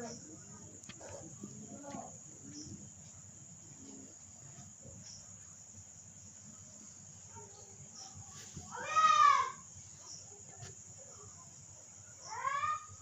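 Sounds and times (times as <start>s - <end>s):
insects chirring: 0.0s - 13.0s.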